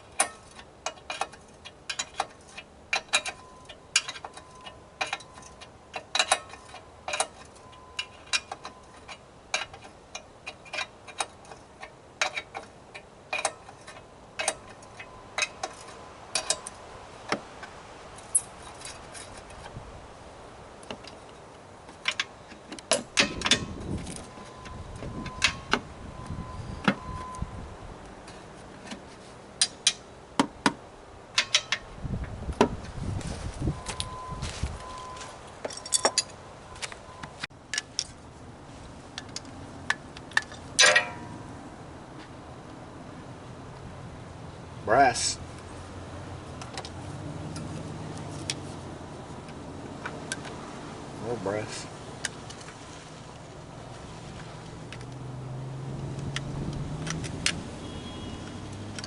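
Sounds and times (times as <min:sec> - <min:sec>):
handling and scraping noise: 0:00.0 - 0:27.4, 0:28.1 - 0:30.6, 0:31.3 - 0:41.4, 0:44.9 - 0:55.2
hand tools clinking on metal: 0:00.1 - 0:16.8, 0:31.3 - 0:31.9, 0:35.1 - 0:36.4, 0:39.2 - 0:41.3.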